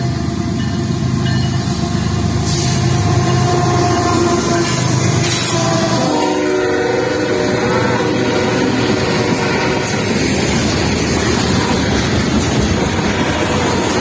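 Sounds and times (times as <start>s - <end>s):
train rumbling on rails: 0.0s - 14.0s
locomotive horn: 2.5s - 10.3s.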